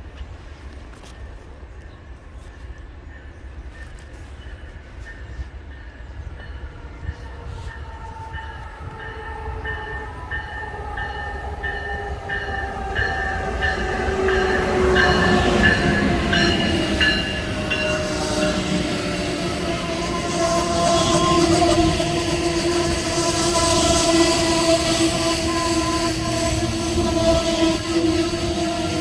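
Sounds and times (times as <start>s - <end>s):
train wheels clattering: 2.4s - 29.0s
train whine falling in pitch: 6.4s - 29.0s.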